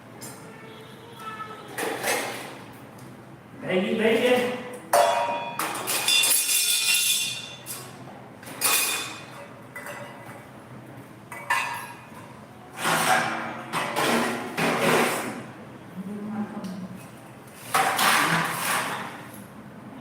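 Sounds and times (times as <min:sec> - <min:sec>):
kitchen utensils clattering: 0:01.8 - 0:02.7, 0:04.9 - 0:10.5, 0:11.3 - 0:15.5, 0:17.6 - 0:19.5.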